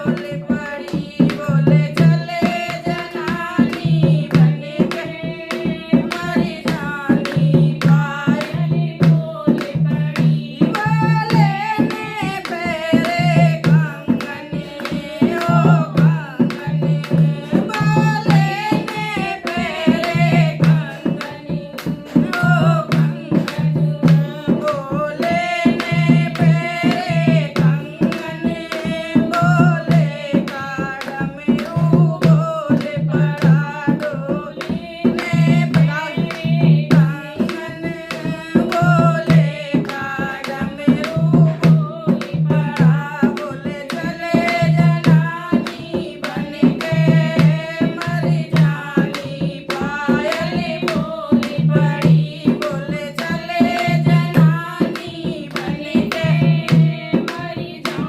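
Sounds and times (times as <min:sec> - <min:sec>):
devotional song singing: 0:00.0 - 0:58.0
drums keeping a steady beat: 0:00.0 - 0:58.0.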